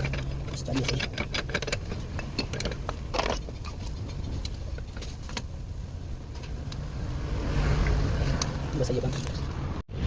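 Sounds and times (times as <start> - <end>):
low steady rumble: 0.0 - 10.0.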